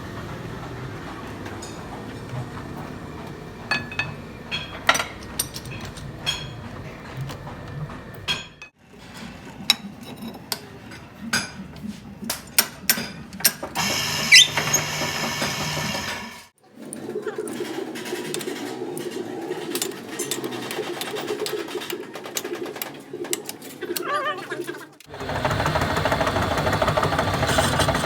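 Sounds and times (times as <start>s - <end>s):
metal tools clinking: 3.7s - 6.8s.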